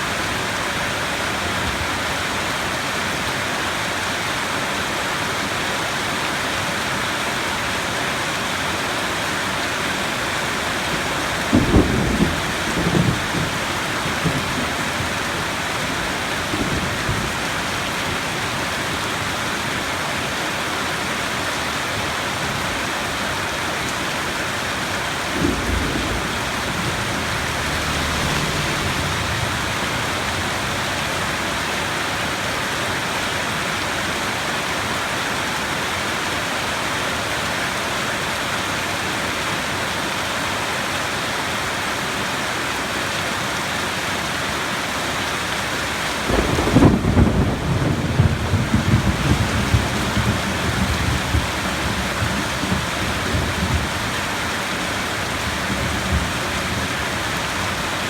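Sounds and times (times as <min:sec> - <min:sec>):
heavy rain hissing: 0:00.0 - 0:58.0
thunder rumbling and cracking: 0:10.6 - 0:19.3, 0:24.6 - 0:32.4, 0:46.2 - 0:58.0.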